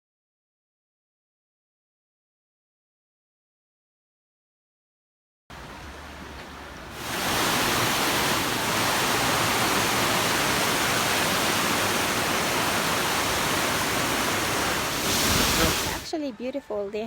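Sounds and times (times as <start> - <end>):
waterfall roaring: 6.9 - 16.1.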